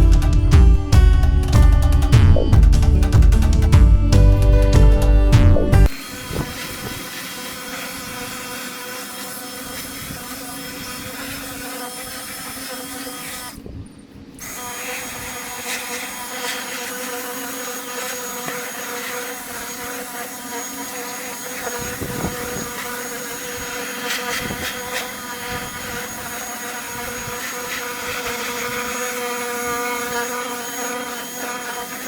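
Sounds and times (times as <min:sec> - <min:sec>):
music: 0:00.0 - 0:05.9
small electric motor whining: 0:05.0 - 0:32.0.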